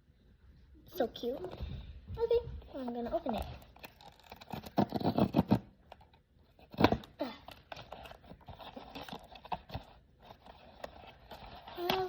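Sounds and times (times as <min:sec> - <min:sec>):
packaging crinkling and tearing: 0:03.2 - 0:12.0.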